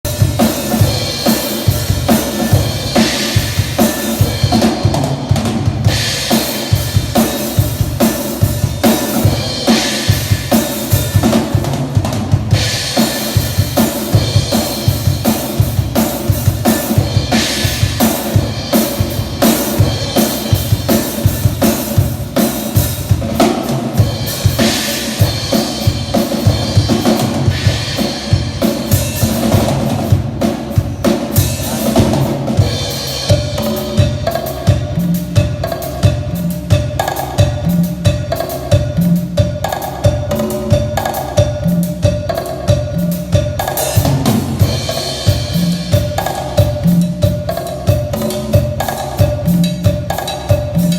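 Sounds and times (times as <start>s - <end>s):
bass drum: 0.0s - 50.9s
drum kit groove: 0.0s - 50.9s
snare drum: 0.1s - 34.2s.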